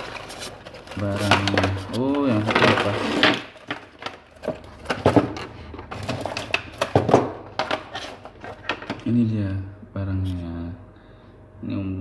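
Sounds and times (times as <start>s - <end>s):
packaging rustling: 0.0s - 9.1s.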